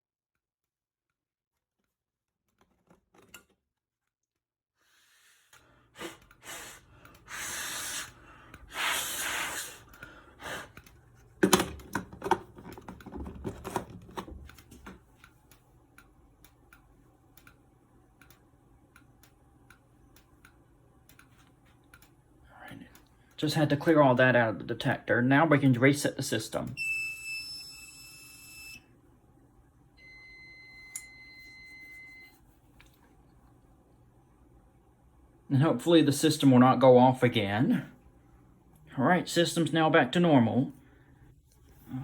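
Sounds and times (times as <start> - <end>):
hissing air blasts: 6.0 - 9.8
handling noises: 11.1 - 15.0
clicks: 18.2 - 22.2.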